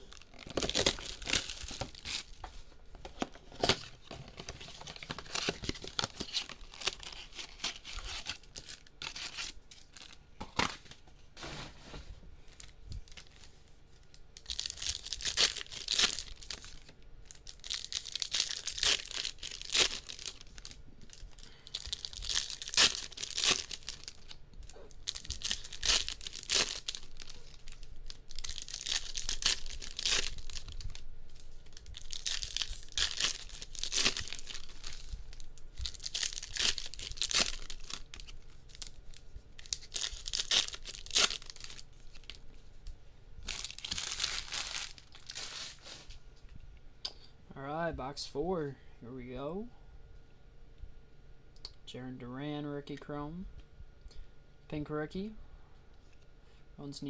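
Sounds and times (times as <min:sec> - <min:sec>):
plastic wrapping tearing and crinkling: 0:00.0 - 0:11.0, 0:12.4 - 0:42.5, 0:43.4 - 0:46.2.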